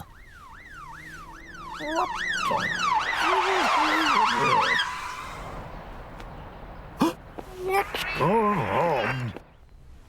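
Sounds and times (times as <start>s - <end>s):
police car siren: 0.0s - 6.0s.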